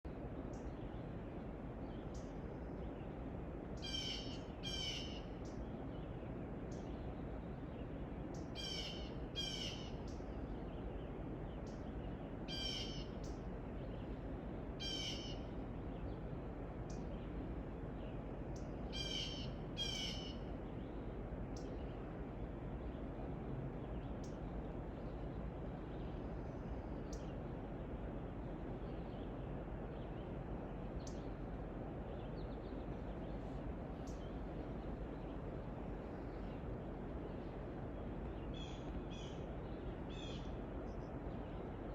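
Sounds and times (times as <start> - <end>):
steady background noise: 0.0 - 41.9
bird calling: 3.8 - 5.5, 8.6 - 10.2, 12.5 - 13.4, 14.8 - 15.5, 18.9 - 20.5, 38.4 - 40.6.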